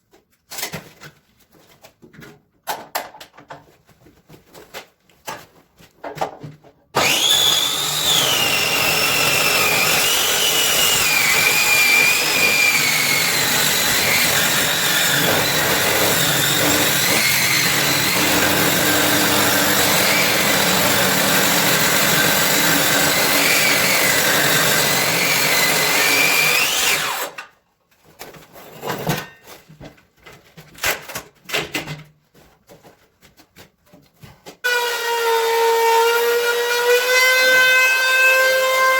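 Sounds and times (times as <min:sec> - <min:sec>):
power tool whining on wood: 0:07.0 - 0:27.4, 0:34.7 - 0:38.9.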